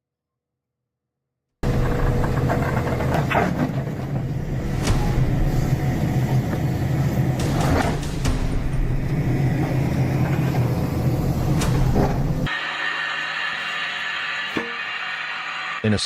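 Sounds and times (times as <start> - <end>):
heavy machine engine running: 1.6 - 13.5.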